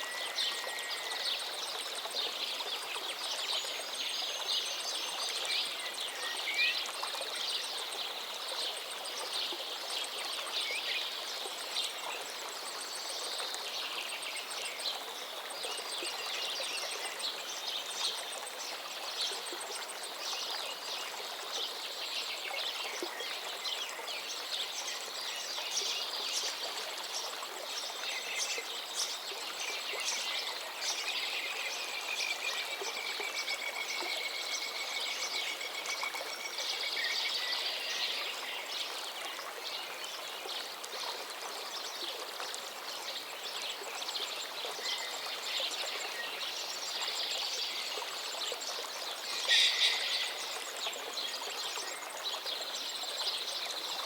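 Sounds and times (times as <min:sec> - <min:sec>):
river flowing: 0:00.0 - 0:54.0
songbirds singing: 0:41.6 - 0:54.0.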